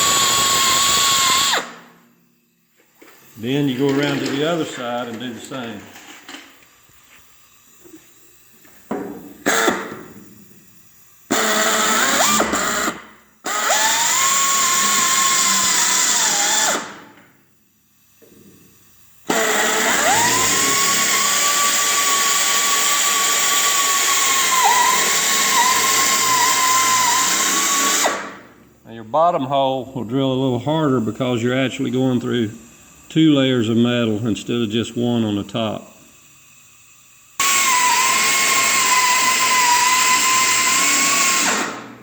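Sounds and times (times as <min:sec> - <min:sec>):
electric drill boring sheet steel: 0:00.0 - 0:01.9, 0:06.8 - 0:10.0, 0:10.8 - 0:17.0, 0:19.1 - 0:28.5, 0:30.0 - 0:42.0.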